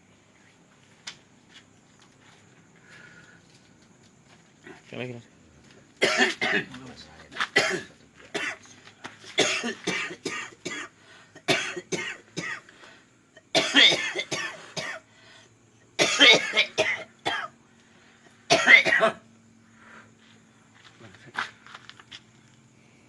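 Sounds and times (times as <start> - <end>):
man coughing hard: 6.0 - 6.8, 7.6 - 8.6, 9.3 - 12.6, 13.5 - 15.0, 16.0 - 17.6, 18.5 - 19.2.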